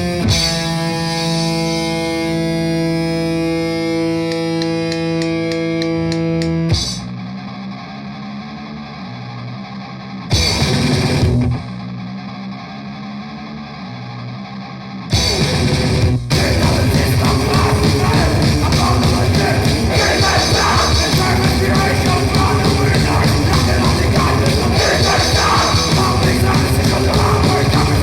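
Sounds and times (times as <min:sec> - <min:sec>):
distorted electric guitar music: 0:00.0 - 0:28.0
full-band blasts: 0:15.2 - 0:28.0.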